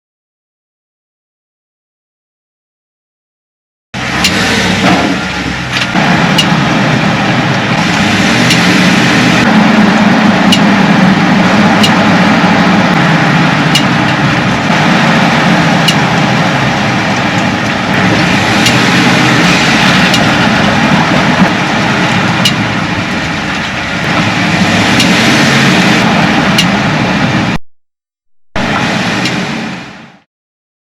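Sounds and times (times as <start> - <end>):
truck road noise: 4.0 - 27.6, 28.5 - 30.3
sharp drivetrain clicks: 4.1 - 26.8.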